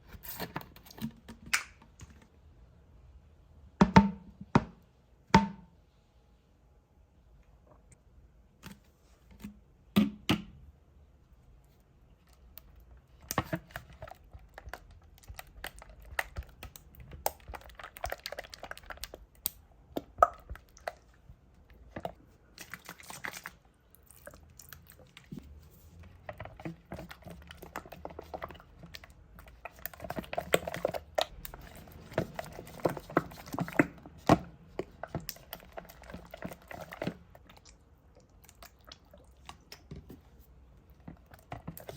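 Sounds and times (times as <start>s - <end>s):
slime squelching and clicking: 12.4s - 25.4s, 26.2s - 40.1s.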